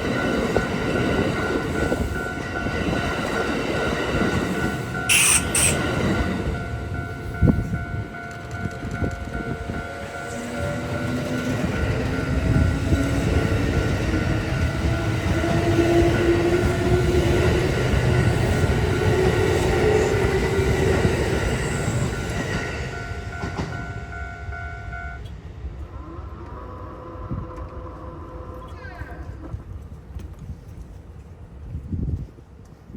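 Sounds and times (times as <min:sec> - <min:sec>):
crossing warning bell ringing: 0:00.0 - 0:25.3
electric train wheels and running gear: 0:00.0 - 0:31.8
train motor whine: 0:05.0 - 0:06.8.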